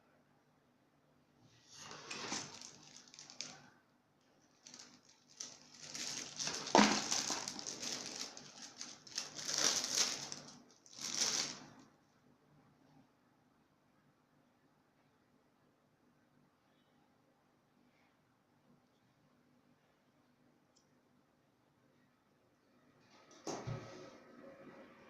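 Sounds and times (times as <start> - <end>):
rustling and crinkling: 1.7 - 11.9.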